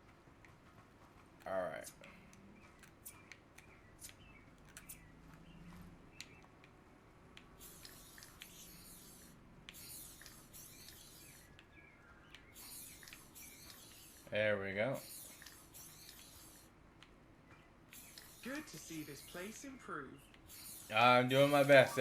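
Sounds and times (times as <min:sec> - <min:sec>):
small clicks and taps: 0:00.4 - 0:08.6.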